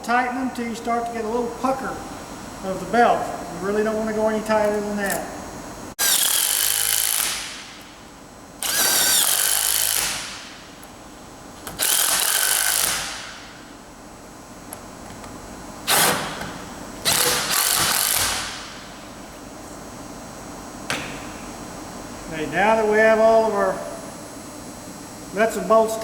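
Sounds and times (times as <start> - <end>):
impact wrench hammering: 8.6 - 10.5, 11.7 - 13.4, 15.9 - 18.7.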